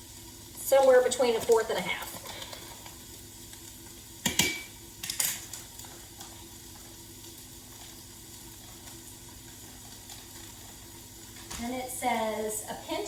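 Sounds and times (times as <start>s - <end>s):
faint food sizzling: 0.0s - 13.0s
utensil clinking on metal pot: 4.2s - 5.6s.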